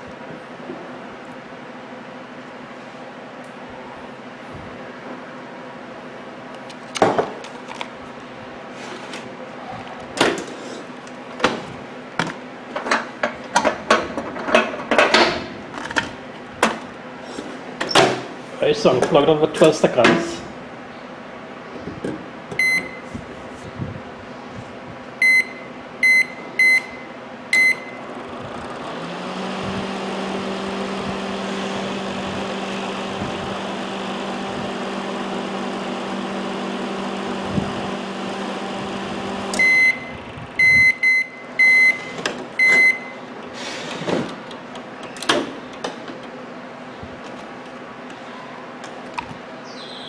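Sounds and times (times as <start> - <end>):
microwave running hum: 0.0 - 50.0
microwave finish beeps: 22.6 - 23.1, 25.2 - 28.1, 39.5 - 43.3
microwave keypad beeps: 22.6 - 23.1, 25.2 - 28.1, 39.6 - 43.2.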